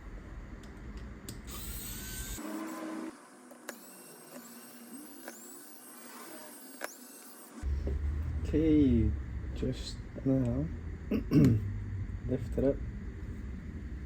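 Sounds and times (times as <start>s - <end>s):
electric screwdriver whirring: 1.5s - 7.4s.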